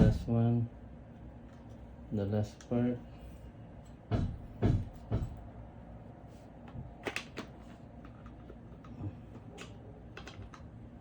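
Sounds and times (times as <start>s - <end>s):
hardware parts knocking and clicking: 3.9s - 5.4s.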